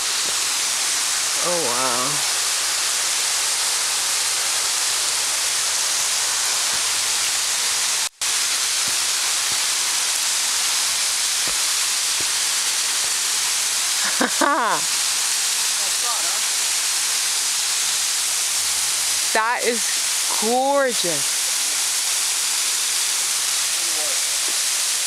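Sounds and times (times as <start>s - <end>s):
waterfall rushing: 0.0s - 25.0s
person exclaiming: 1.4s - 2.3s, 14.0s - 14.9s.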